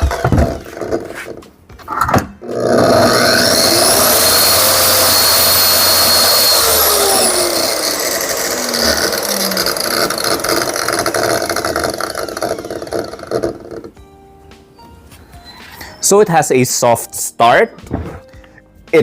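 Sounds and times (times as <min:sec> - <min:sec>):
track saw motor whirring down: 0:02.4 - 0:14.0.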